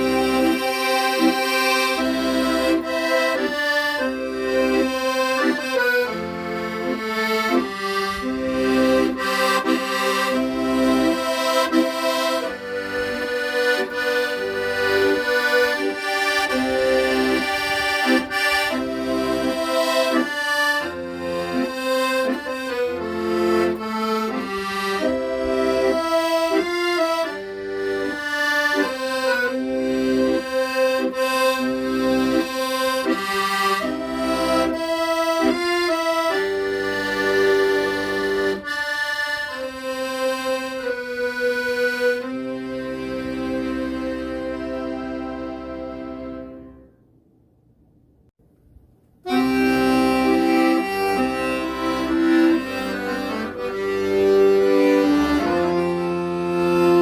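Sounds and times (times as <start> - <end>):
accordion playing a melody: 0.0 - 47.1, 49.2 - 57.0.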